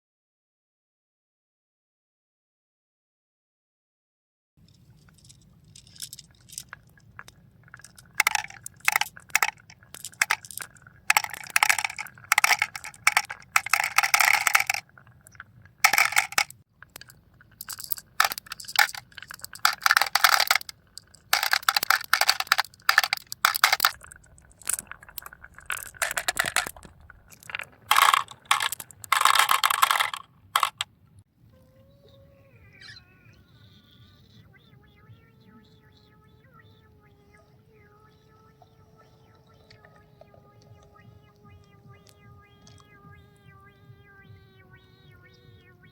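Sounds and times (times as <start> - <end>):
marbles rattling down a track: 5.2 - 7.1, 7.7 - 14.9, 15.8 - 30.8.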